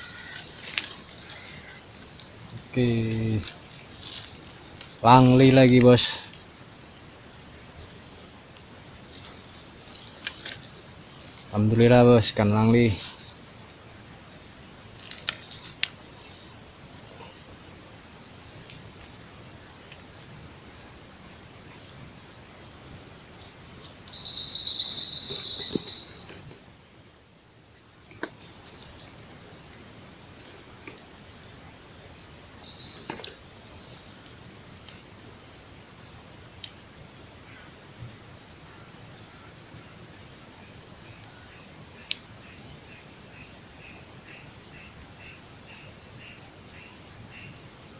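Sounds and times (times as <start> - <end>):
insects shrilling chorus: 0.0 - 27.1, 27.8 - 47.9
loud buzzing insect call: 0.0 - 47.9
faint clicks: 15.0 - 16.0.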